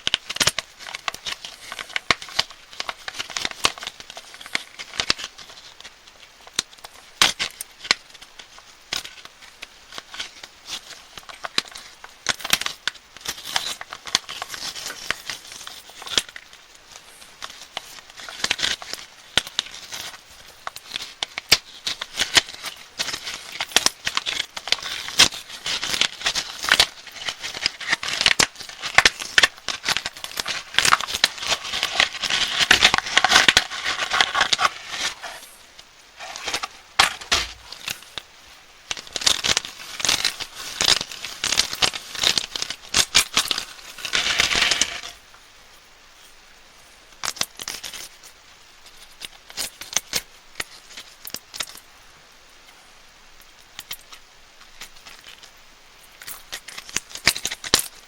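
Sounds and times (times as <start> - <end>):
candy wrappers crinkling: 0.0 - 45.2, 56.1 - 58.0.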